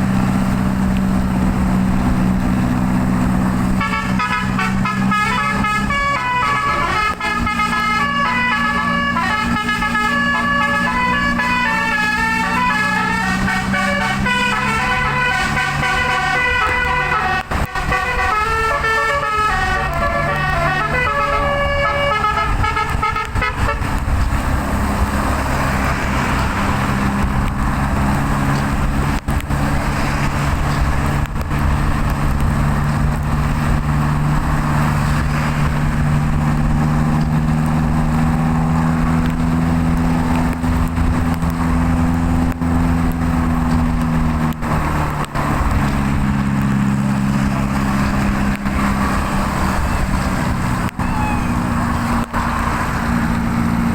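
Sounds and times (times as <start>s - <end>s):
engine drone: 0.0s - 53.9s
road noise: 0.0s - 53.9s
bus musical air horn tune: 3.8s - 24.2s, 50.9s - 51.7s.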